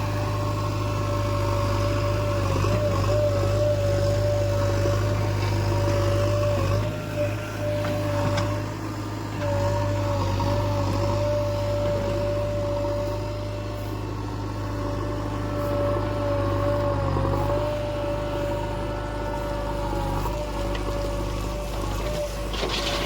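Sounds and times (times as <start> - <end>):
backhoe diesel engine running: 0.0 - 23.0.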